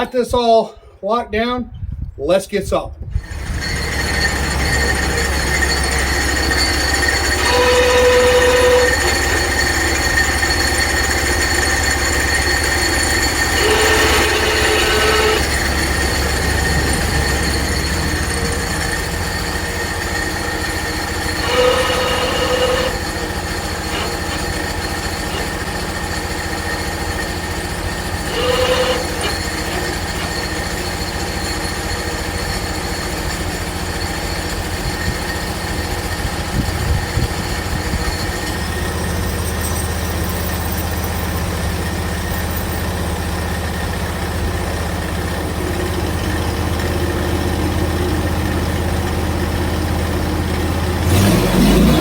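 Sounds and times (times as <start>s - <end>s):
bandsaw mill engine running: 3.1s - 52.0s.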